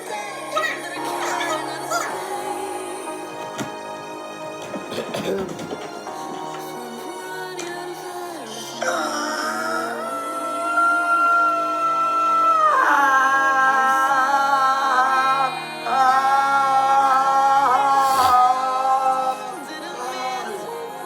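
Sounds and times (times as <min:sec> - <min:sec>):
music: 0:00.0 - 0:21.0
person singing sustained notes: 0:06.1 - 0:21.0.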